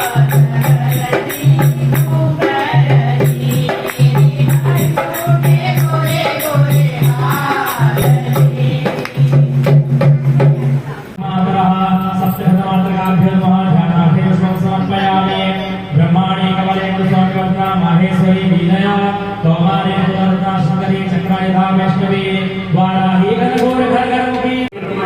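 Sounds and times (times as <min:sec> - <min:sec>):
devotional singing: 0:00.0 - 0:09.8, 0:11.2 - 0:25.0
jingling percussion: 0:00.0 - 0:10.6, 0:11.8 - 0:13.5.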